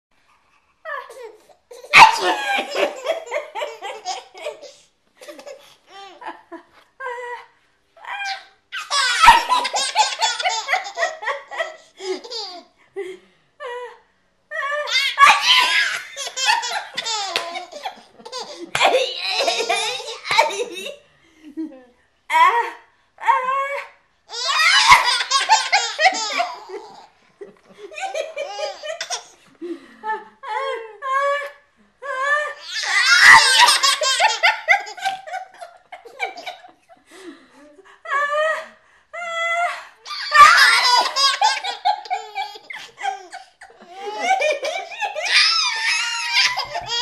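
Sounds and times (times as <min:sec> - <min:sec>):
baby laughing: 0:01.0 - 0:06.4, 0:08.2 - 0:12.6, 0:14.8 - 0:21.0, 0:24.3 - 0:27.2, 0:28.0 - 0:29.4, 0:32.5 - 0:36.7, 0:40.1 - 0:47.0
baby squealing: 0:32.6 - 0:33.8, 0:45.1 - 0:47.0.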